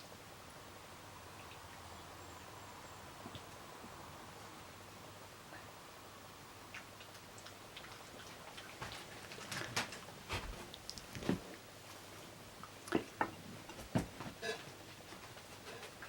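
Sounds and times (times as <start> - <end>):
dogs crunching raw vegetables: 6.7 - 11.6.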